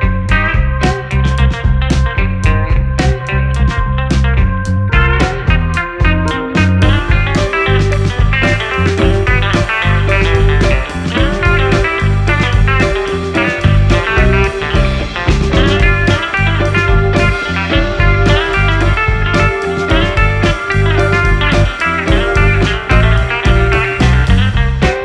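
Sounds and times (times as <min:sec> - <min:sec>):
guitar blues-rock instrumental: 0:00.0 - 0:25.0.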